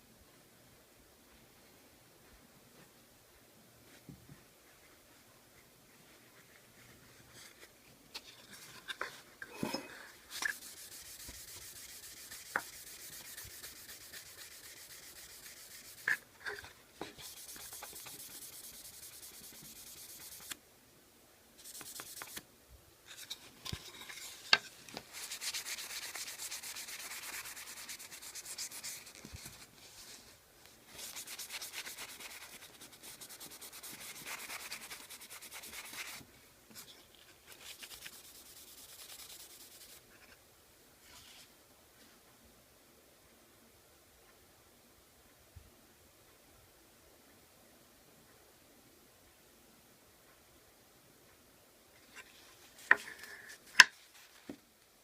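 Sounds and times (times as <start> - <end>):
hand rubbing on wooden case: 10.4 - 20.6.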